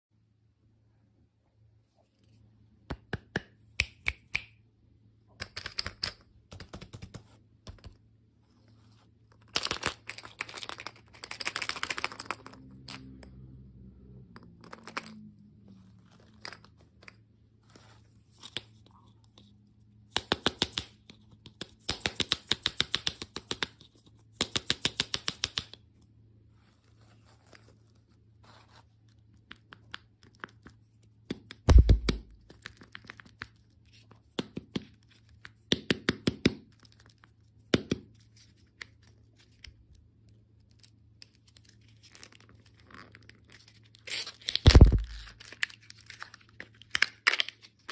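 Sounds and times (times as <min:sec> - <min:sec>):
packaging tearing and crinkling: 0:41.6 - 0:47.9.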